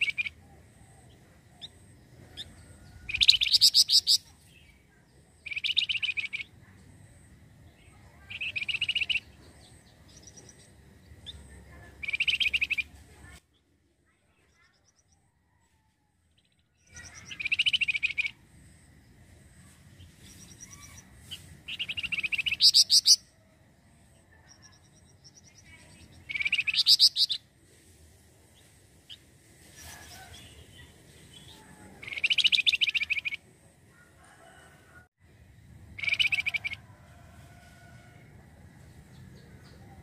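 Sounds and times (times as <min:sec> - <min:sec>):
bird chattering trills: 0:01.0 - 0:04.3, 0:05.4 - 0:06.6, 0:07.8 - 0:12.9, 0:16.8 - 0:18.4, 0:20.4 - 0:23.3, 0:24.5 - 0:27.4, 0:31.4 - 0:33.4, 0:36.0 - 0:36.8.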